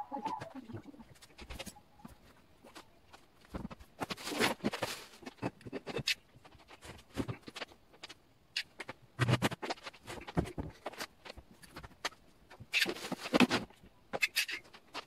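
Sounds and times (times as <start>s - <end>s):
scratches and scrapes: 1.1s - 15.0s.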